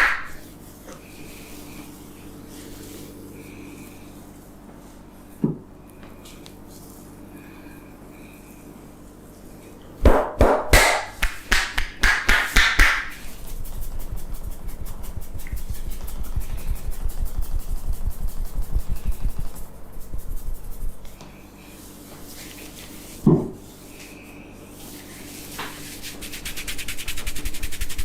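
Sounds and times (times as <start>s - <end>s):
hands slapping head: 0.0s - 0.4s, 10.0s - 13.2s
rapid hand tapping on head: 10.0s - 20.9s.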